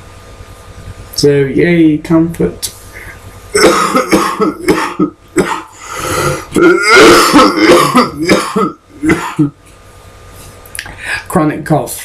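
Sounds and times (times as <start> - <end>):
man coughing: 3.5 - 9.6.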